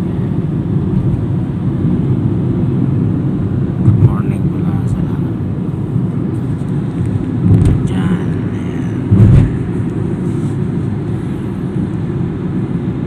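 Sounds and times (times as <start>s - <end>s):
vehicle engine and tyres rumbling: 0.0s - 13.0s
vehicle thumps: 9.1s - 9.6s.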